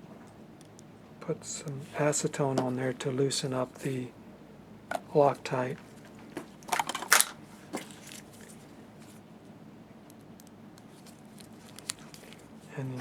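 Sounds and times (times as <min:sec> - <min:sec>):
rustling handling noises: 0:04.9 - 0:13.0.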